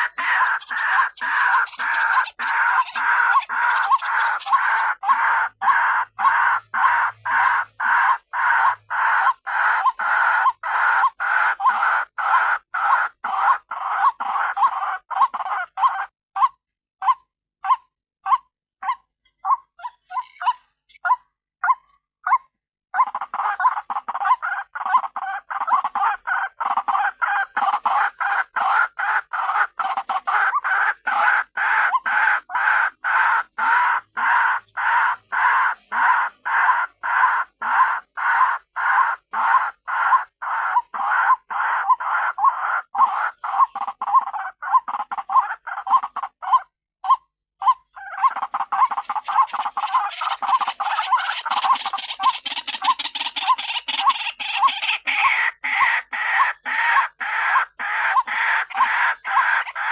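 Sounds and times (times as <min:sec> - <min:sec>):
waterhen calling: 0:00.0 - 0:16.6, 0:23.0 - 0:59.9.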